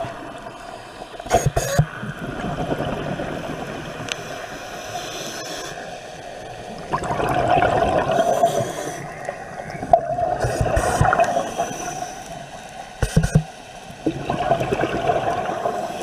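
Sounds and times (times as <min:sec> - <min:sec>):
water gurgling and bubbling: 0:01.2 - 0:04.2, 0:06.5 - 0:12.0, 0:13.0 - 0:16.0.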